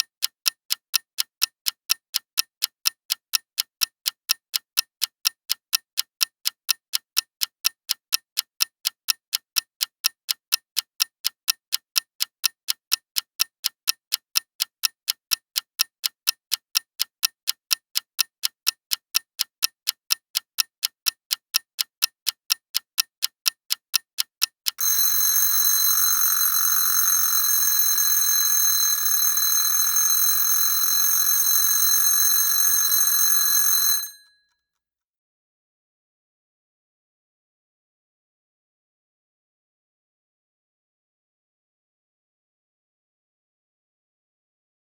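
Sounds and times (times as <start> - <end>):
clock ticking: 0.0 - 34.2
bell alarm clock ringing: 24.8 - 34.3.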